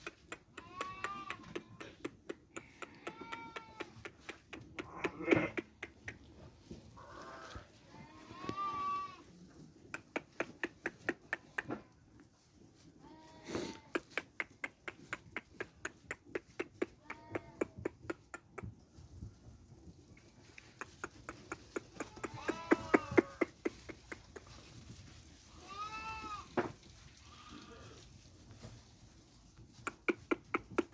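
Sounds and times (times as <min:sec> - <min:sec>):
sheep bleating: 0:00.5 - 0:02.0, 0:02.8 - 0:04.0, 0:07.0 - 0:09.3, 0:22.0 - 0:23.6, 0:25.5 - 0:26.5.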